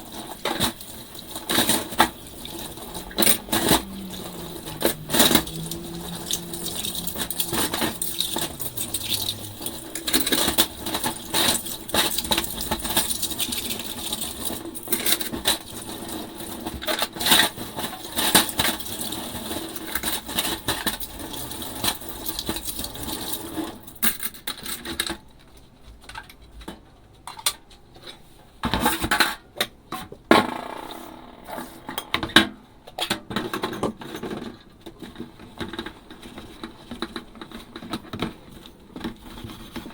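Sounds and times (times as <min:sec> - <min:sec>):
running water hiss: 0:00.0 - 0:16.7.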